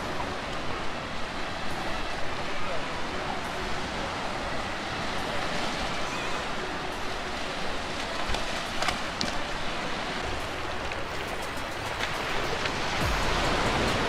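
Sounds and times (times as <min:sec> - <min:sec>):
surf washing onto beach: 0:00.0 - 0:14.0.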